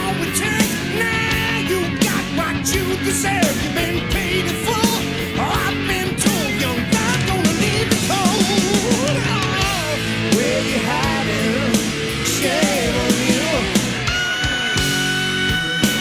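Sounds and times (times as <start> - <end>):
hard rock band playing: 0.0 - 16.0
electric guitar solo: 3.3 - 16.0.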